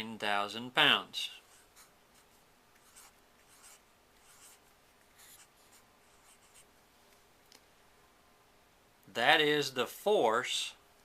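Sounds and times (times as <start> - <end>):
pen scratching handwriting: 2.8 - 4.6, 5.2 - 6.7.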